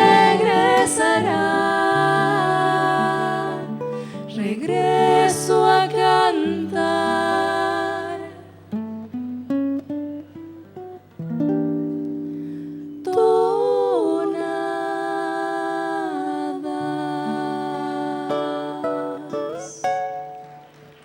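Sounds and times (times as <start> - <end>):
two voices singing: 0.0 - 8.8, 13.0 - 20.1
acoustic guitar plucked notes: 0.0 - 13.3.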